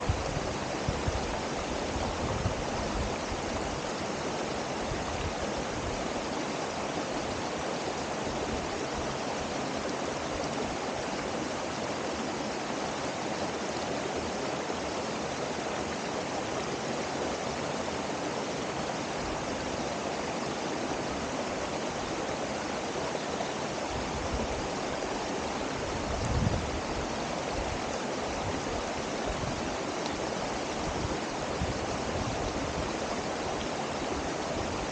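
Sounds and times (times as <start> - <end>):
waterfall rushing: 0.0 - 34.9.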